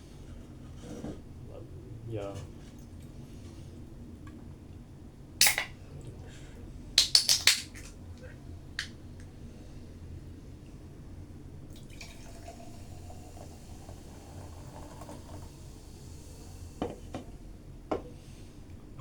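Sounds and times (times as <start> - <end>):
drink pouring into glass: 11.7 - 17.0.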